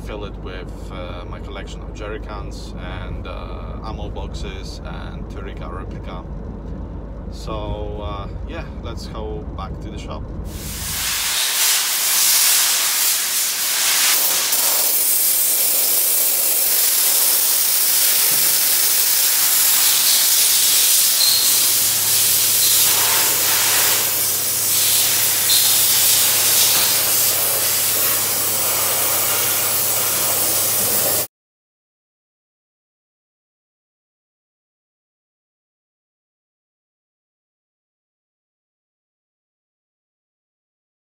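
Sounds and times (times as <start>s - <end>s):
low steady hum: 0.0s - 11.0s
sandblaster hissing: 10.5s - 31.3s.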